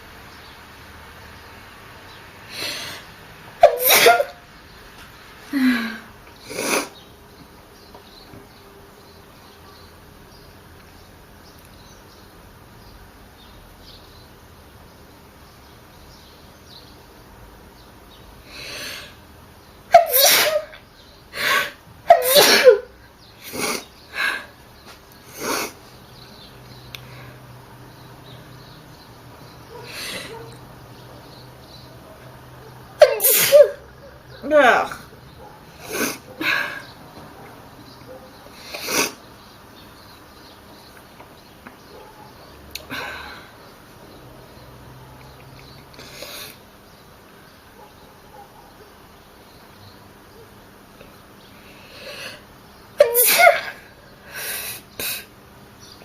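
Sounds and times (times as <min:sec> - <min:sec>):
person sneezing: 0:03.6 - 0:04.4, 0:19.9 - 0:20.8, 0:21.4 - 0:22.8, 0:33.0 - 0:33.8, 0:53.0 - 0:53.9.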